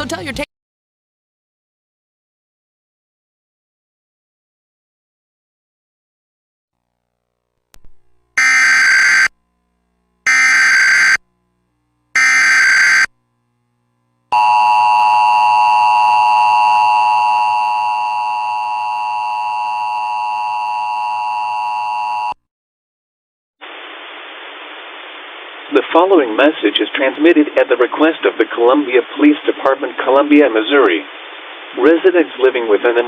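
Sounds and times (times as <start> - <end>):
screeching data tones: 8.4 - 9.3, 10.3 - 11.2, 12.2 - 13.1.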